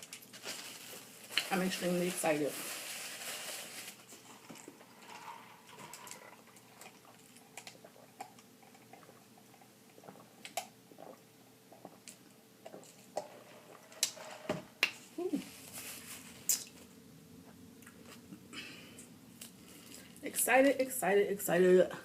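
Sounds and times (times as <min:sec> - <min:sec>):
person chewing food: 0:04.3 - 0:14.2.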